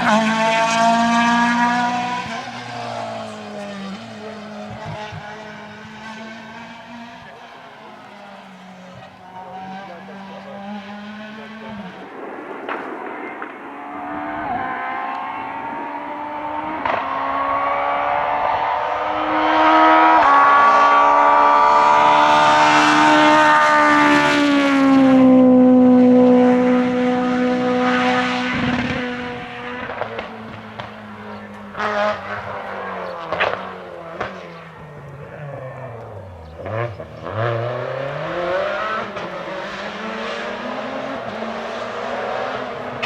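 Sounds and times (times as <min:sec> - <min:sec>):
rally car engine revving past: 0:00.0 - 0:43.0
sharp cracks: 0:11.9 - 0:15.4, 0:29.6 - 0:36.9.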